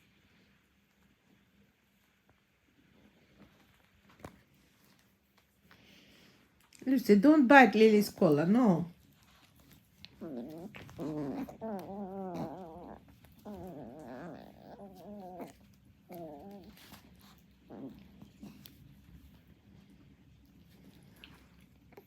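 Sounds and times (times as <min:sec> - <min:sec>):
small dog growling: 0:09.3 - 0:19.9, 0:20.5 - 0:22.0.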